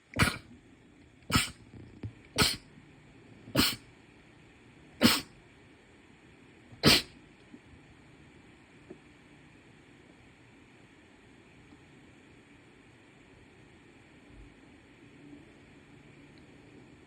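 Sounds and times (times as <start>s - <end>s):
person sneezing: 0.0s - 0.4s, 1.3s - 1.6s, 2.4s - 2.6s, 3.6s - 3.8s, 5.0s - 5.3s, 6.8s - 7.1s.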